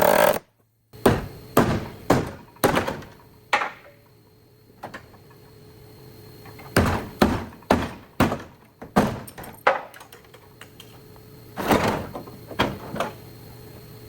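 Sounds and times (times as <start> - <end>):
heavy knocks and thuds: 1.0 - 3.2.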